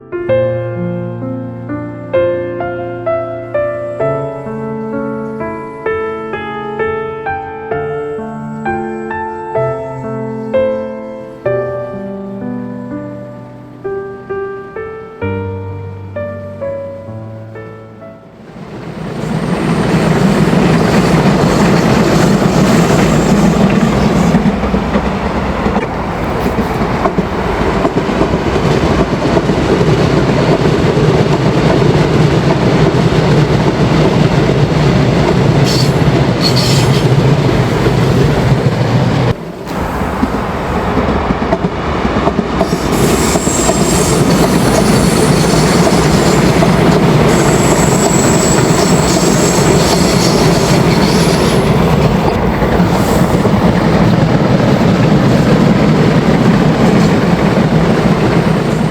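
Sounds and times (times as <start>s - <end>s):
subway train rumbling on rails: 0.0s - 58.9s
wheel squeals: 35.6s - 37.1s, 42.6s - 53.4s.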